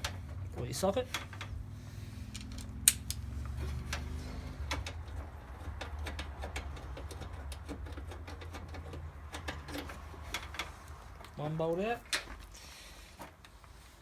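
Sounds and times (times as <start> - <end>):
socket ratchet clicking: 2.3 - 3.3.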